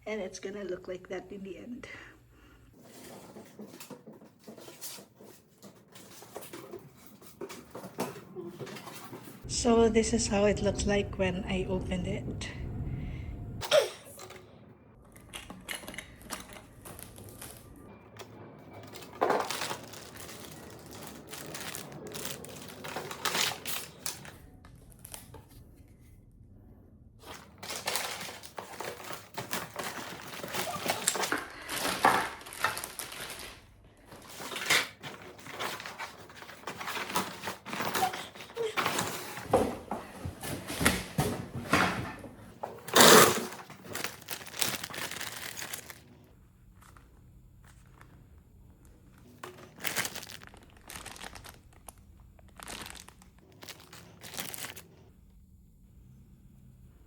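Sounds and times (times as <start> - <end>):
plastic packaging crinkling: 15.1 - 25.4, 27.2 - 39.6, 42.8 - 46.2, 46.8 - 55.1.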